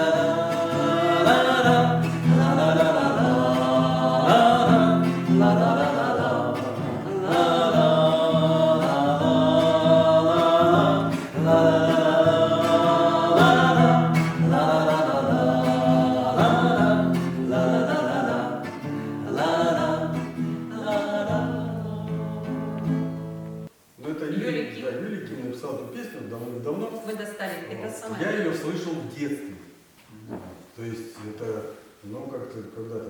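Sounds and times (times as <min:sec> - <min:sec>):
voices singing: 0:00.0 - 0:23.4
strummed acoustic guitar: 0:00.0 - 0:23.7.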